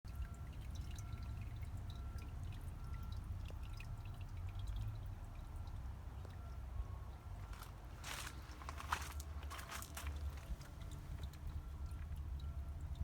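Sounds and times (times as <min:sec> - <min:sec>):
water trickling and dripping: 0:00.1 - 0:13.0.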